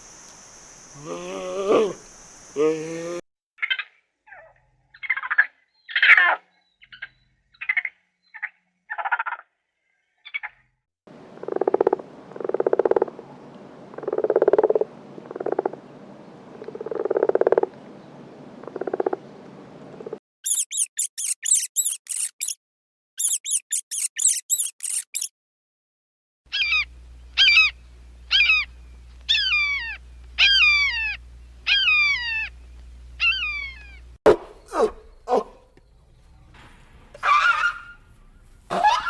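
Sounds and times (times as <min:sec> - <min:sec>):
frog croaking: 0:00.8 - 0:03.2, 0:11.4 - 0:13.2, 0:14.0 - 0:15.8, 0:16.6 - 0:17.7, 0:18.6 - 0:19.2
fast high-pitched chirps: 0:20.4 - 0:22.6, 0:23.2 - 0:25.3
short mid-pitched calls: 0:34.3 - 0:35.6.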